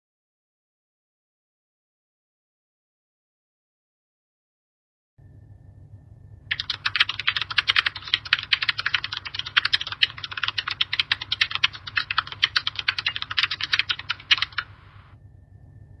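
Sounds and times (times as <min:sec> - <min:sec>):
faint low hum: 0:05.2 - 0:16.0
keyboard typing: 0:06.5 - 0:15.2.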